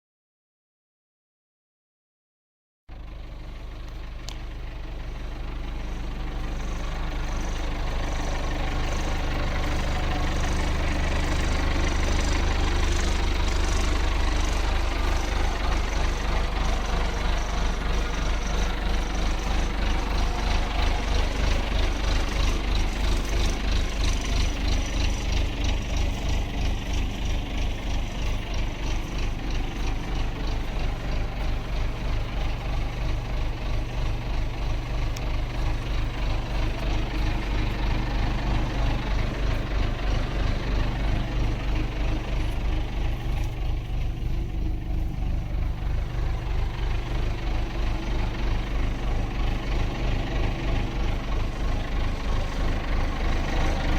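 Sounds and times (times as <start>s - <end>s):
diesel engine idling: 2.9s - 53.9s.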